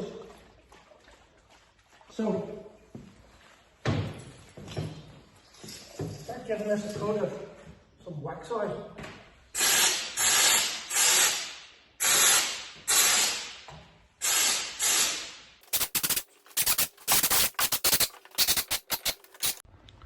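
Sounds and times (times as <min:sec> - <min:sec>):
spray gun hissing bursts: 0:14.2 - 0:19.6.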